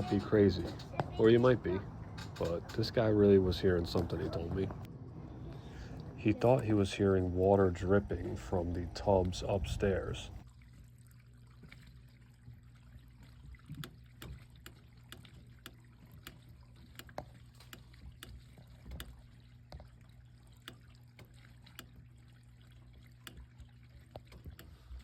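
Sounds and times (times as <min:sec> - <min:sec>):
faint ticking in drain pipes: 0:10.3 - 0:25.0.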